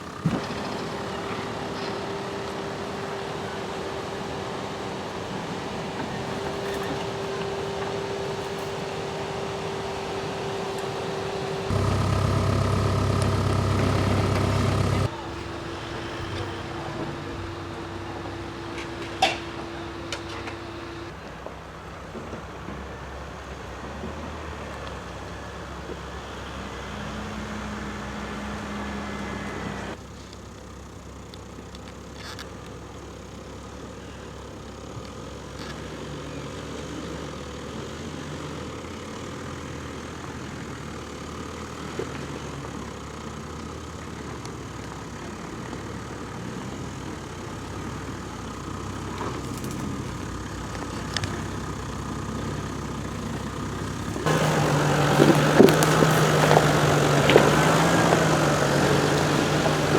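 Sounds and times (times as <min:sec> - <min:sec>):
vehicle engine at low revs: 0:00.0 - 0:21.2, 0:26.9 - 0:59.9
louder engine note: 0:05.9 - 0:15.1.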